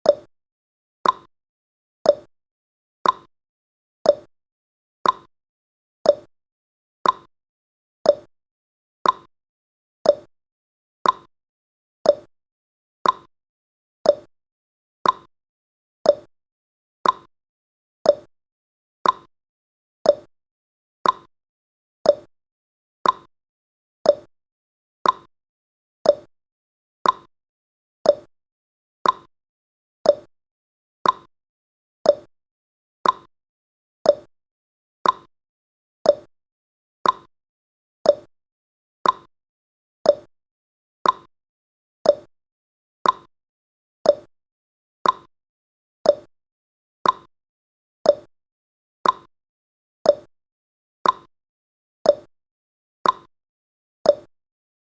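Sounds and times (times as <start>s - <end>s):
clock ticking: 13.0s - 13.3s, 29.0s - 29.3s, 33.0s - 33.3s, 37.0s - 37.3s, 39.0s - 39.3s, 43.0s - 43.3s, 45.0s - 45.3s, 47.0s - 47.3s.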